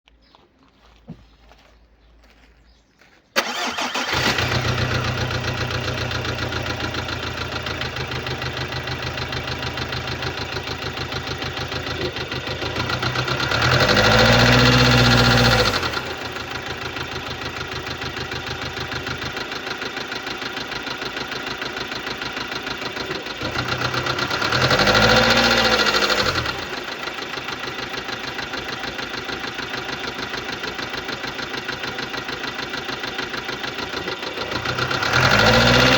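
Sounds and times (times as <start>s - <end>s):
diesel engine starting: 3.4s - 35.9s
engine idling with ticking clatter: 3.4s - 35.9s
engine revving: 3.4s - 35.9s.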